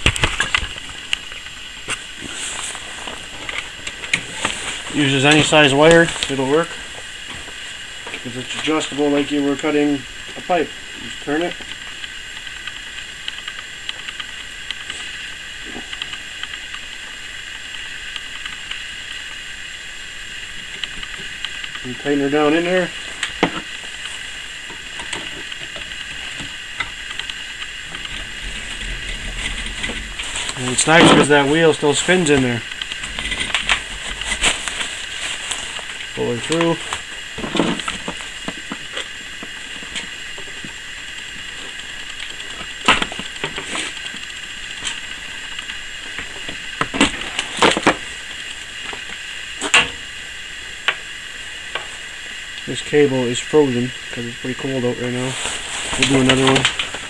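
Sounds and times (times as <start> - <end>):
steady hiss: 0.0 - 57.0
wire stripper creaking and scraping: 25.0 - 38.2.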